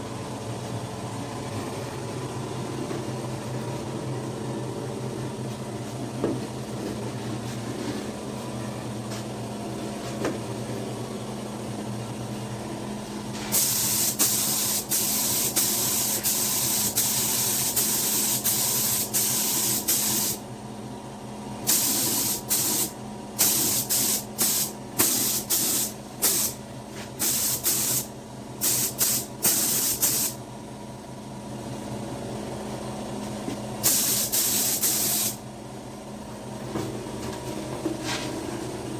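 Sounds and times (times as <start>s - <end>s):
steady low hum: 0.0s - 38.9s
spray paint hissing: 13.5s - 20.4s, 21.7s - 26.6s, 27.2s - 28.0s, 28.6s - 30.4s, 33.8s - 35.4s.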